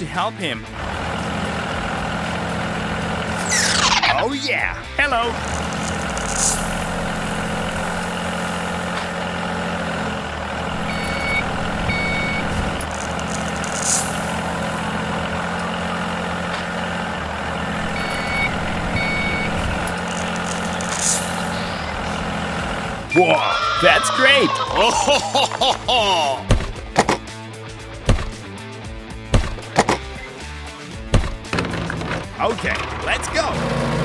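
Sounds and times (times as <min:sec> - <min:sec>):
diesel engine running: 0:00.0 - 0:34.0
reversing alarm beeps: 0:10.8 - 0:12.9, 0:17.8 - 0:20.7, 0:23.1 - 0:24.4.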